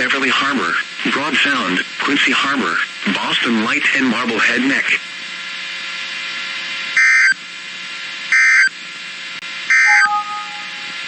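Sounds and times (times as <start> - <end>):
digital data tone bursts: 9.9 - 11.0
faint two-note tone: 9.9 - 11.0.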